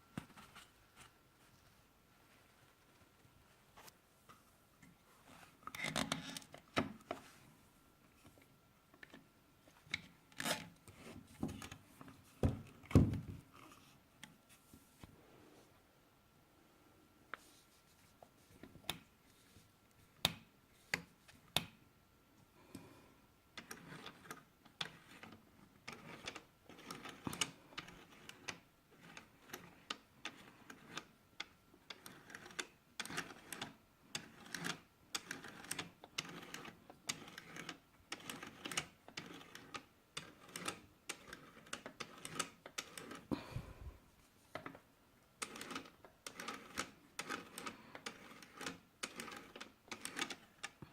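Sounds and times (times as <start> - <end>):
sewing machine clicking and clacking: 45.4 - 50.8.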